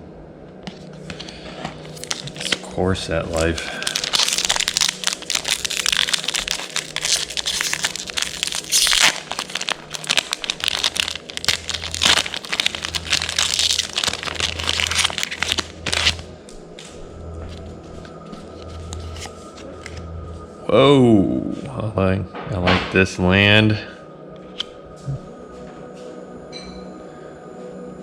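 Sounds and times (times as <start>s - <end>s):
plastic wrapper crinkling: 1.1s - 16.3s, 18.5s - 20.0s.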